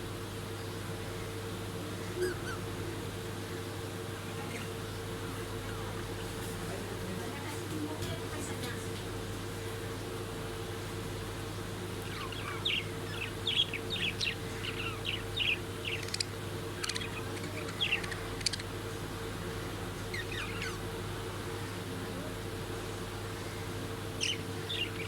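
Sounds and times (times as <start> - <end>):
parrots chirping: 12.0 - 18.8, 20.0 - 20.9, 24.1 - 25.0.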